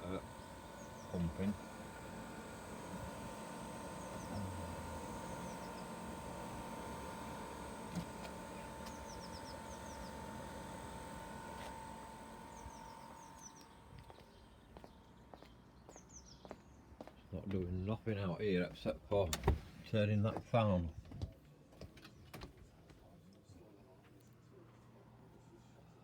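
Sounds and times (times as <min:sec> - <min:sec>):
small birds chirping: 0:00.0 - 0:17.4
heater fan humming and whining: 0:00.0 - 0:20.2, 0:20.8 - 0:26.0.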